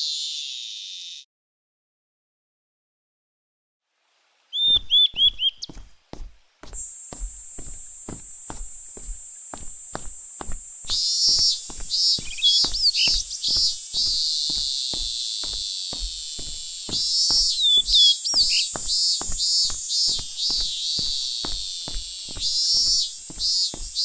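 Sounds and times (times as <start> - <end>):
constant high hiss: 3.9 - 24.0
bird-like chirping effects: 4.6 - 5.8, 10.9 - 15.6, 16.4 - 21.6
electronic music with clicking beat: 6.7 - 24.0.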